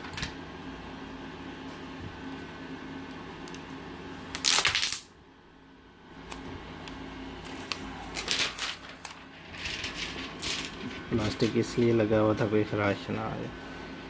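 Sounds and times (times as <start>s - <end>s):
plastic film rustling: 4.3s - 5.0s, 7.4s - 11.9s
plastic film ripping: 4.3s - 5.1s, 7.4s - 11.4s.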